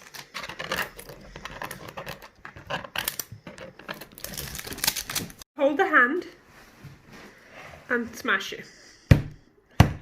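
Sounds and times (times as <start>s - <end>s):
plastic packaging crinkling: 0.0s - 5.4s.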